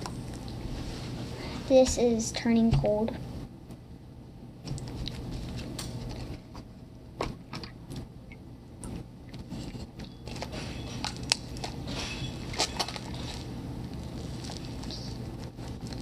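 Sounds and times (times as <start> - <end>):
slime squelching: 12.5 - 16.0.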